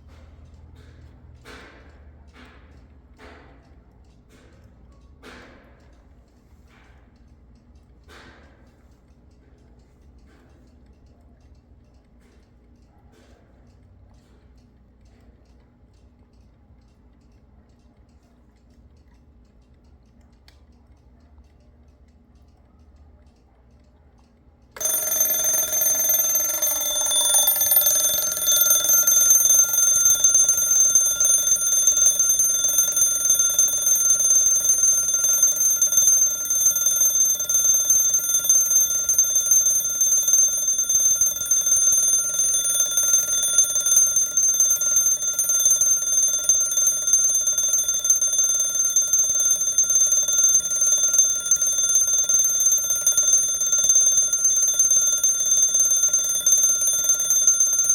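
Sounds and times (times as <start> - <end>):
alarm clock bell ringing: 24.8 - 57.9.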